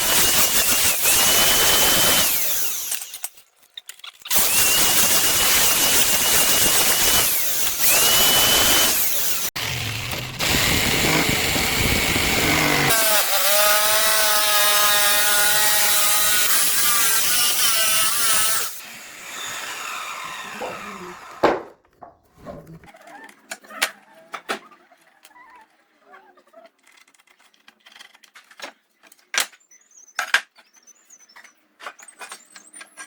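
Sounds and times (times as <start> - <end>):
power tools cutting wood: 0.0 - 3.4, 4.3 - 21.7.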